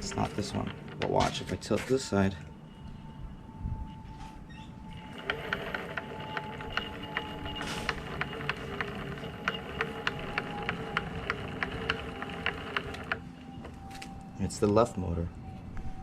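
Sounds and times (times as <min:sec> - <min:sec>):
regular motor clicking: 0:00.0 - 0:01.6, 0:04.9 - 0:13.9
electric motor whine: 0:00.0 - 0:14.8.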